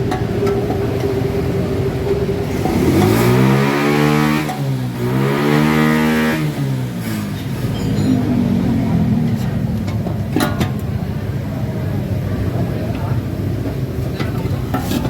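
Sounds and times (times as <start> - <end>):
engine revving: 0.0 - 10.4.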